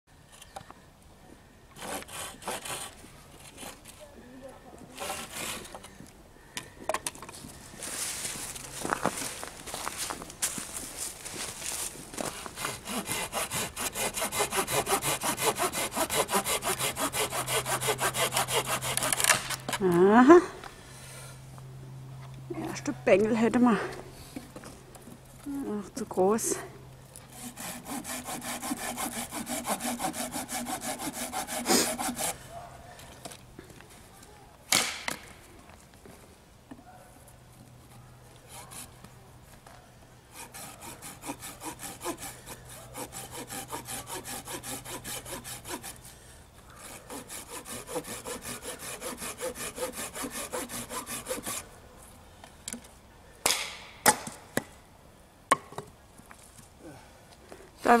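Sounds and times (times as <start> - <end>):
hand saw cutting a branch: 1.8 - 4.0, 4.9 - 5.9, 11.6 - 20.0, 27.2 - 32.4, 38.4 - 39.0, 40.3 - 46.2, 46.8 - 51.7.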